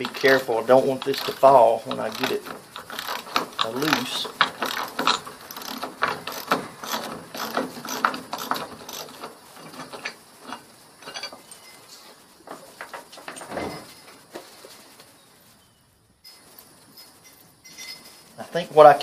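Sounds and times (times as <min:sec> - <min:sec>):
ratchet wrench clicking: 0:00.0 - 0:09.3.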